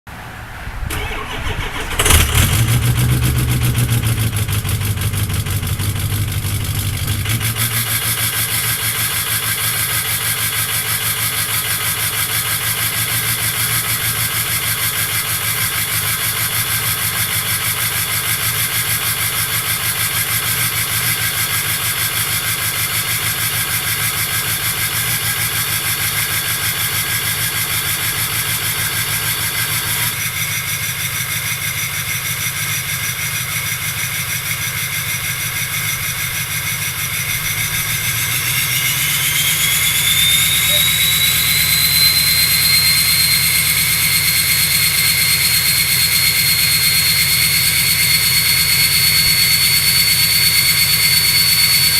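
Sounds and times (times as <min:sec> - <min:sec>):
diesel engine starting and idling: 0:00.1 - 0:51.9
turbo whistle: 0:36.4 - 0:51.9.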